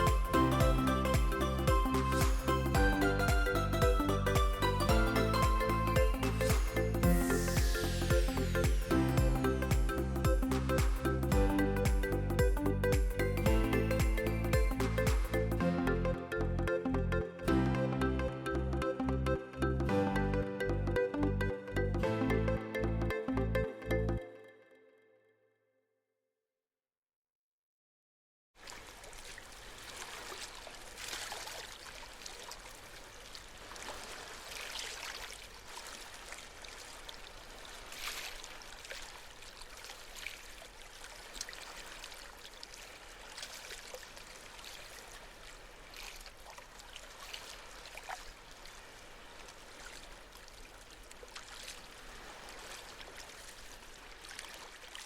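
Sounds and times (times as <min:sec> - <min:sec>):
water running and splashing: 0:28.6 - 0:55.0.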